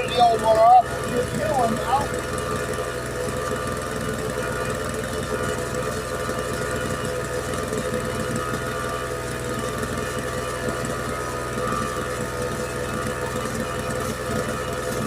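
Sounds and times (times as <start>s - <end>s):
motor humming: 0.0s - 15.0s.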